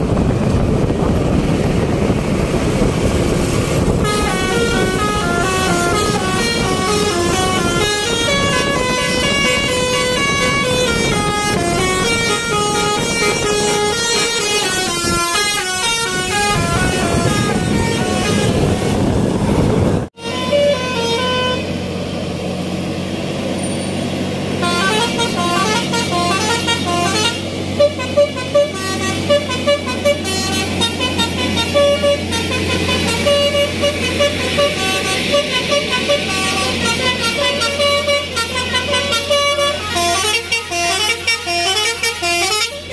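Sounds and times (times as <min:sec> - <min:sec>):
multi-tone bus horn melodies: 0:02.9 - 0:21.9, 0:23.6 - 0:42.9.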